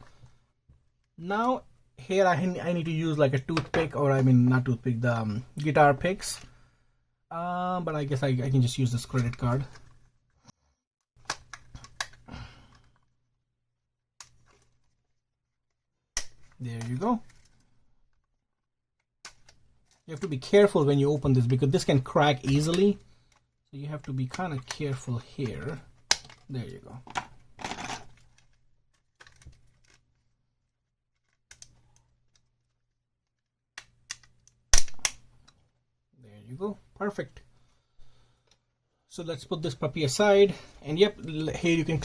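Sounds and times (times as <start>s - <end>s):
plastic clicks and scrapes: 14.2s - 15.2s, 16.2s - 30.4s, 31.2s - 35.8s
sharp plastic clicks: 33.8s - 35.7s.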